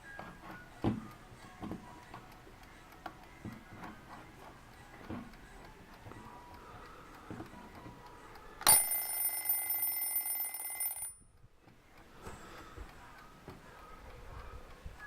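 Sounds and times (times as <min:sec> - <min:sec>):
alarm clock bell ringing: 0:08.7 - 0:11.2.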